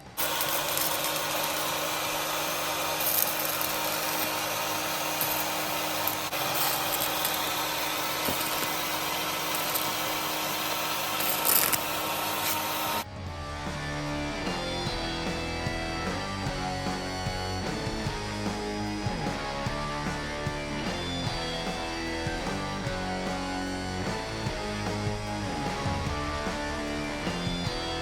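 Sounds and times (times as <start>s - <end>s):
electric arc welding crackle: 0.0s - 13.1s.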